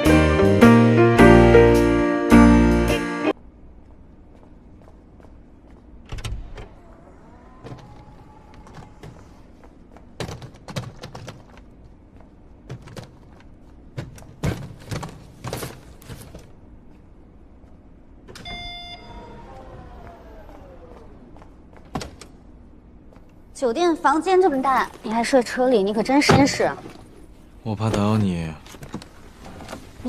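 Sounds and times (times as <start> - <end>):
power window motor whining: 6.6 - 9.3, 18.5 - 22.3.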